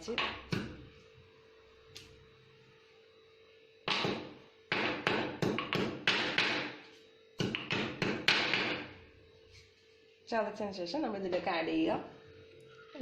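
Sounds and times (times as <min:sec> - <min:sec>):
stone pestle pounding in mortar: 0:03.9 - 0:06.8, 0:07.4 - 0:08.9.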